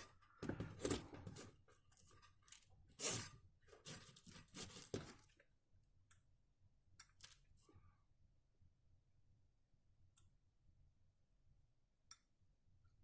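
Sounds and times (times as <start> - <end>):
rustling and scraping: 0.0 - 5.4.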